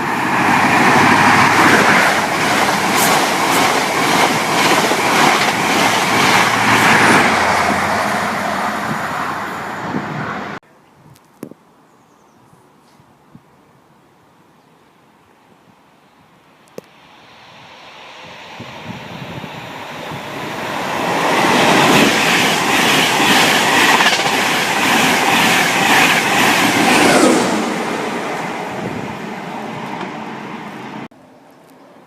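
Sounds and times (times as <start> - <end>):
train passing at speed: 0.0 - 10.6, 16.8 - 31.1.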